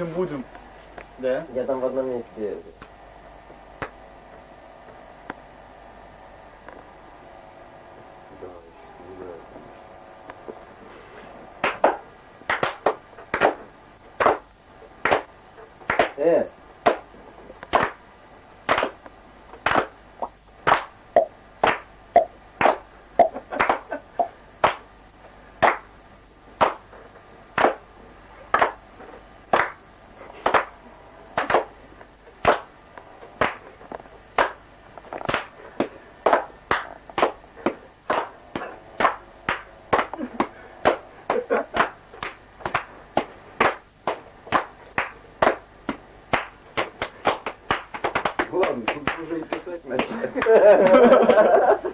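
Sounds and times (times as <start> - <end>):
hand claps or snaps: 3.8 - 4.0, 11.6 - 16.2, 16.8 - 18.0, 18.6 - 24.9, 25.6 - 25.9, 26.6 - 27.0, 27.6 - 27.9, 28.5 - 28.8, 29.5 - 30.8, 31.4 - 31.8, 32.4 - 51.1.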